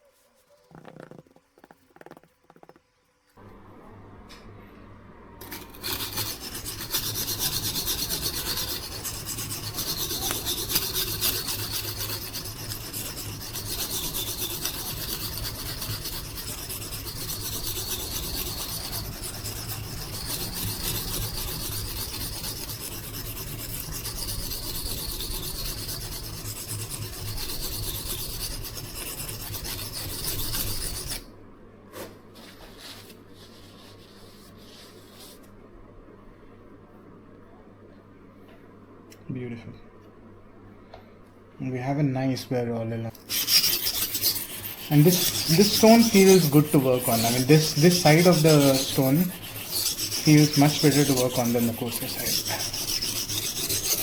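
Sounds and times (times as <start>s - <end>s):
knife scraping on sharpening stone: 5.4s - 31.2s, 43.2s - 54.0s.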